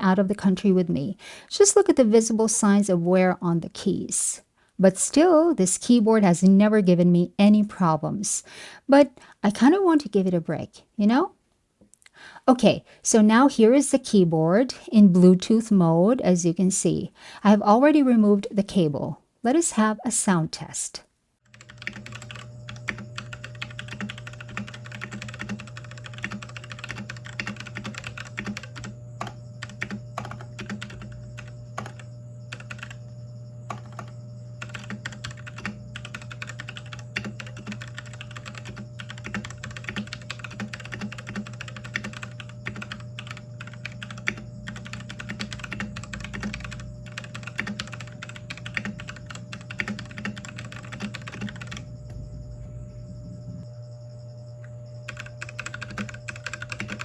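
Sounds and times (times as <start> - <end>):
fast typing on mechanical keyboard: 21.5 - 33.0, 33.7 - 51.8, 55.1 - 57.0
steady low hum: 21.5 - 57.0.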